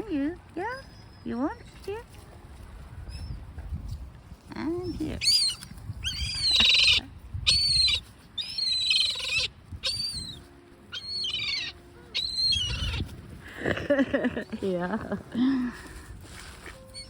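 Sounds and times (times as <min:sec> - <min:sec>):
wind rumble on microphone: 0:00.0 - 0:08.4, 0:09.3 - 0:10.5, 0:12.2 - 0:17.0
gulls calling: 0:05.2 - 0:13.0.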